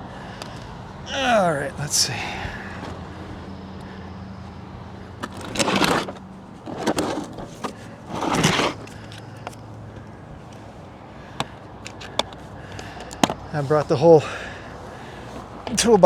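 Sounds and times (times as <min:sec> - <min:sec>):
scraping rustles: 0:02.4 - 0:14.0.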